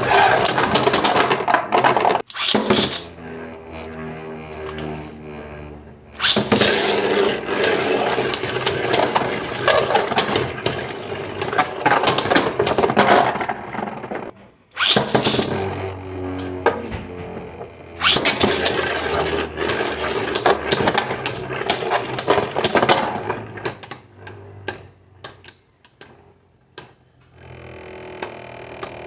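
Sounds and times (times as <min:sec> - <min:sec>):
spinning tops scraping and rattling: 0:00.0 - 0:17.0.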